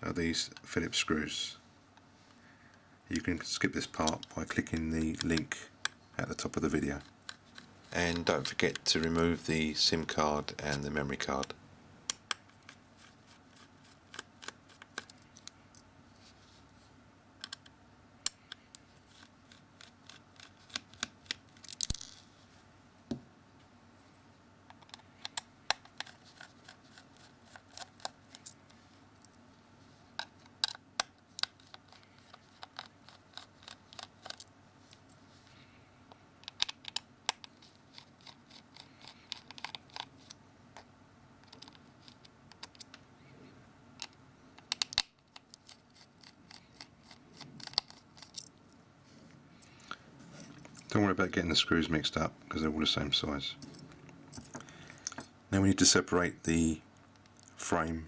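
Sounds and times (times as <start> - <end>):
scratch: 6.8 - 8.7, 12.5 - 15.2, 18.9 - 21.1, 25.8 - 28.5, 31.4 - 34.5, 37.5 - 40.4, 45.3 - 48.4.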